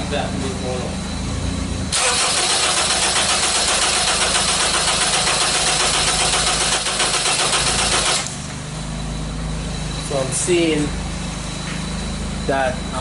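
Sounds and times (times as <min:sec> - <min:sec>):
engine cranking on starter: 0:01.9 - 0:08.4.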